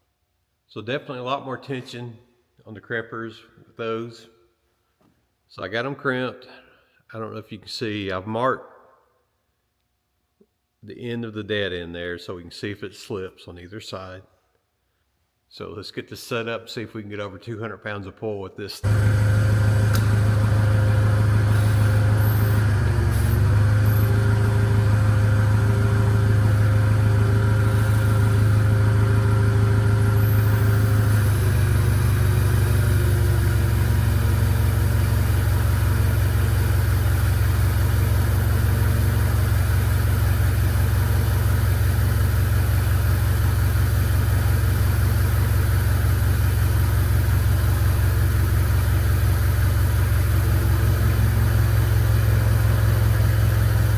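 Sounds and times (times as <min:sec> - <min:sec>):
engine drone: 0:18.8 - 0:53.9.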